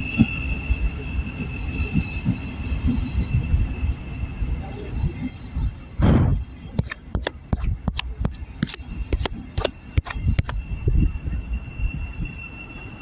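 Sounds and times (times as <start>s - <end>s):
low wind rumble: 0.0s - 13.0s
steady high whine: 0.0s - 13.0s
sharp clicks and knocks: 6.8s - 10.6s.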